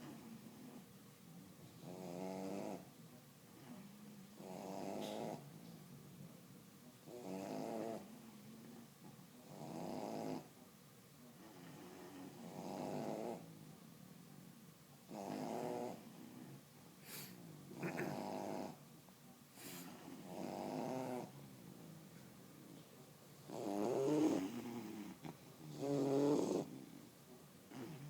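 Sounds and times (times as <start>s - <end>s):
dog snoring: 1.8s - 5.5s, 7.0s - 10.6s, 11.3s - 13.5s, 15.1s - 18.8s, 19.6s - 22.0s, 23.4s - 27.1s, 27.7s - 28.0s.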